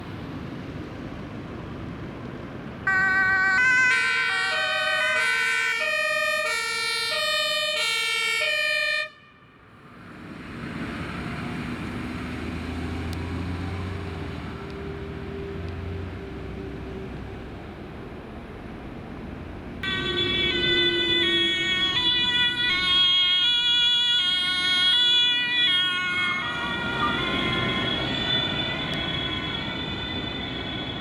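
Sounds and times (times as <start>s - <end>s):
traffic noise: 0.0s - 31.0s
two-tone emergency siren: 2.9s - 9.5s, 19.8s - 31.0s.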